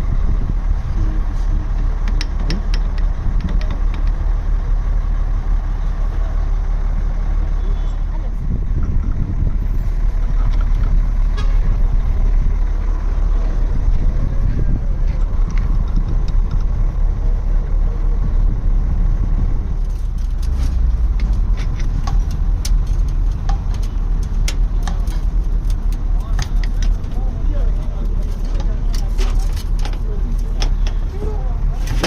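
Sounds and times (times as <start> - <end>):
vehicle engine rumbling: 0.0 - 32.0
sharp irregular clicks: 1.7 - 4.3, 19.9 - 31.0.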